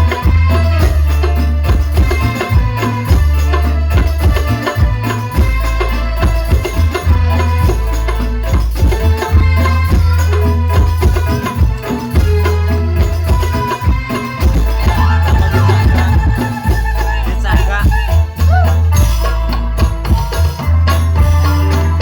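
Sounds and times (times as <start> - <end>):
hand drums beating: 0.0 - 22.0
religious music over sound system: 0.0 - 22.0
heavy deep bass: 14.4 - 22.0.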